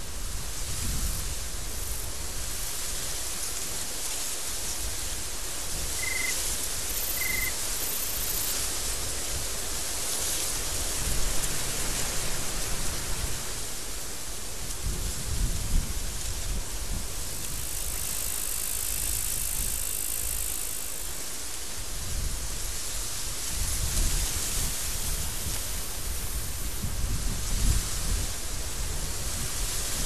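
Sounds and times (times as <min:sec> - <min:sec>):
wind blowing with hiss: 0:00.0 - 0:30.0
wind gusts buffeting microphone: 0:14.6 - 0:17.7, 0:21.9 - 0:30.0.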